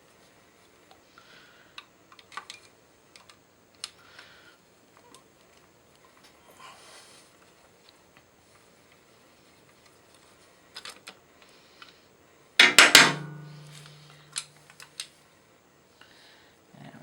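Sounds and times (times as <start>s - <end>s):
loud metallic clanks: 12.6s - 14.1s.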